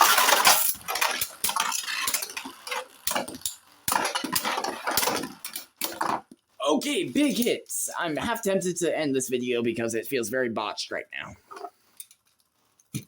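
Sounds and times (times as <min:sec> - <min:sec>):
spinning tops whirring: 0:00.0 - 0:06.1
spinning tops clacking together: 0:00.0 - 0:06.3.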